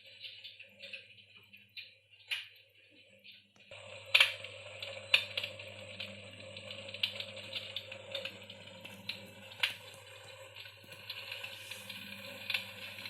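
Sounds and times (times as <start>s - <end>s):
fire crackle sound effect: 3.7s - 13.0s.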